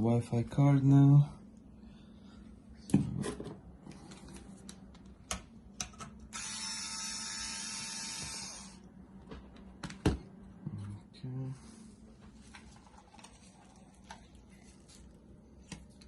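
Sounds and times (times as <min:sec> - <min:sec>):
electric screwdriver running: 0:06.3 - 0:08.8.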